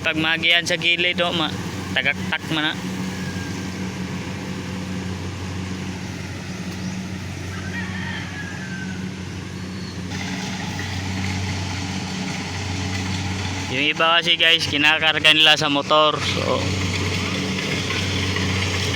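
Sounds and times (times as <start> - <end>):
small engine humming: 0.0 - 18.9.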